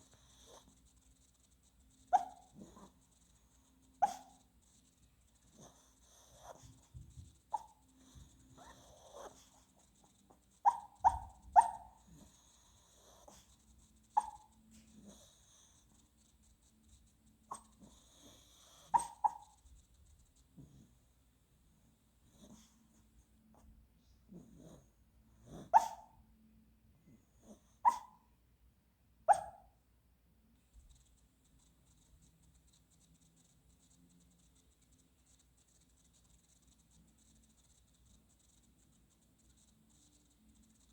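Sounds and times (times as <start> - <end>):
dog yipping in sleep: 0.0 - 0.8, 2.0 - 4.5, 5.5 - 16.3, 17.4 - 19.7, 25.5 - 26.2, 27.4 - 28.3, 29.3 - 29.8.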